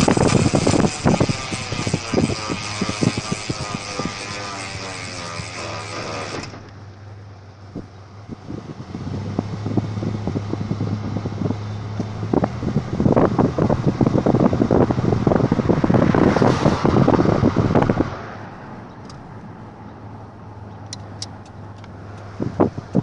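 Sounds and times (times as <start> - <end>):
steady low hum: 0.0 - 15.9.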